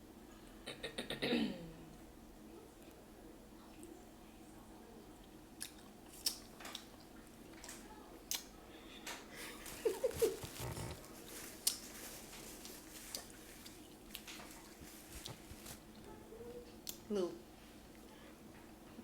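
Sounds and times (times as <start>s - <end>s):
chewing and crunching: 5.2s - 8.5s, 9.6s - 16.1s.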